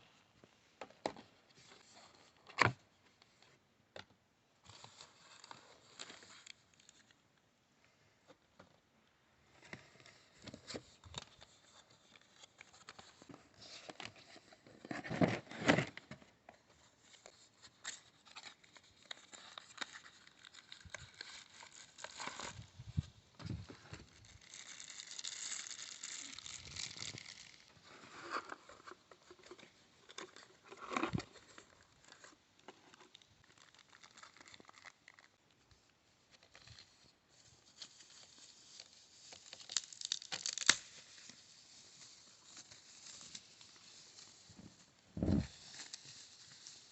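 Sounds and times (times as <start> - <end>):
packaging rustling and tearing: 17.0 - 46.9.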